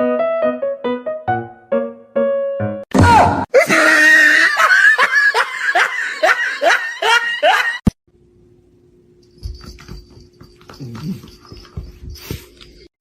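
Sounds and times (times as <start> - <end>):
high-pitched laughter: 3.6 - 7.8.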